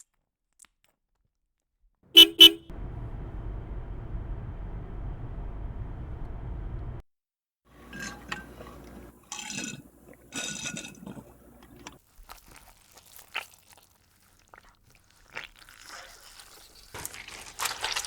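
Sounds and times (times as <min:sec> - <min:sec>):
liquid splashing and dripping: 0:14.9 - 0:18.0.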